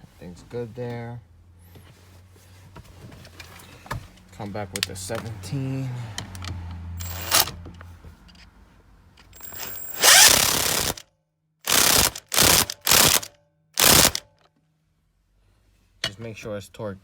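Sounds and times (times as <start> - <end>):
ratchet wrench clicking: 6.3 - 7.5, 9.2 - 11.0, 11.7 - 14.2.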